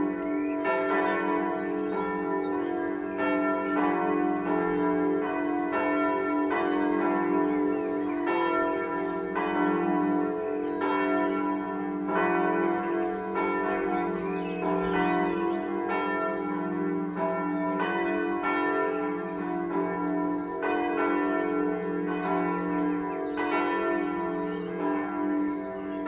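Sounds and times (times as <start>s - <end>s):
church bells pealing: 0.0s - 26.0s.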